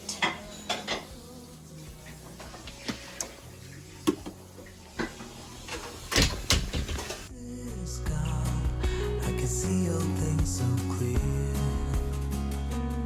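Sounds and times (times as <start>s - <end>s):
soft background music: 0.0s - 13.0s
objects handled and set down: 5.0s - 7.3s.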